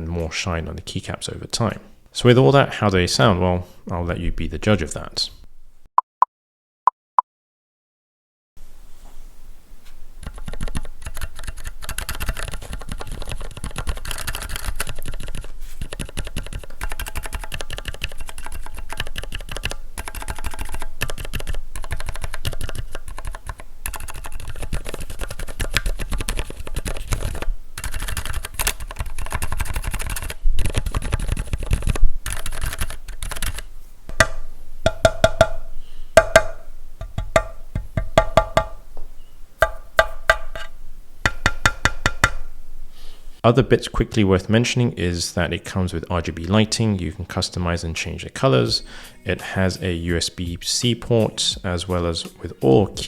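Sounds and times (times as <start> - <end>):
mechanical keyboard typing: 10.2 - 33.6.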